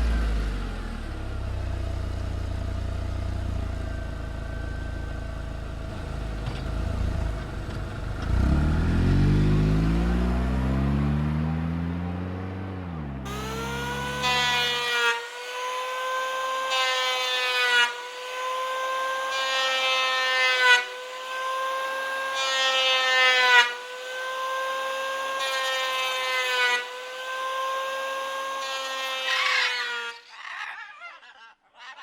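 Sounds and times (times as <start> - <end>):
power tool motor whining: 13.3 - 30.2.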